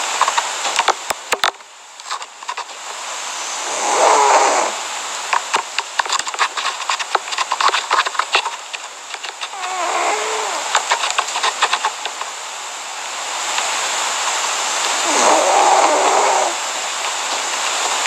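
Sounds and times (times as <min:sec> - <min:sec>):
cat snoring: 0:03.6 - 0:04.8, 0:09.5 - 0:10.7, 0:15.0 - 0:16.6.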